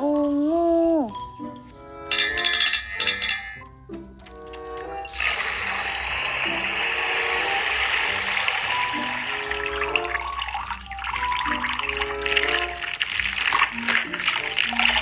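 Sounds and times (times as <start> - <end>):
plinking background music: 0.0 - 15.0
running water rushing: 4.3 - 15.0.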